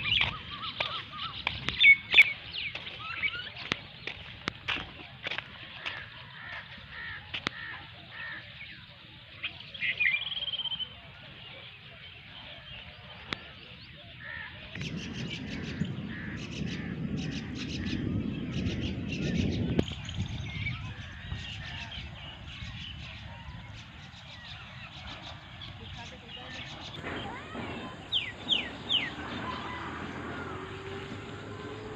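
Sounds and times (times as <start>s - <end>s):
birds chirping: 0.0s - 31.9s
low rushing with crackling: 14.7s - 31.9s
harsh bird call: 24.4s - 31.9s.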